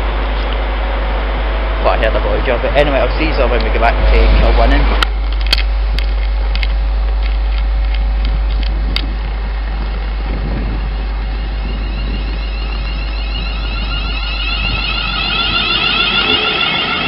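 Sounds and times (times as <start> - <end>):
train equipment low hum: 0.0 - 17.0
warbling tone: 9.8 - 17.0.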